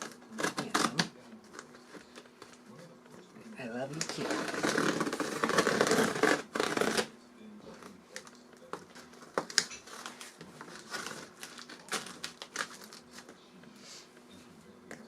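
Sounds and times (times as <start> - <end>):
packaging crinkling and rustling: 0.0 - 2.7, 3.9 - 7.1, 7.7 - 13.4.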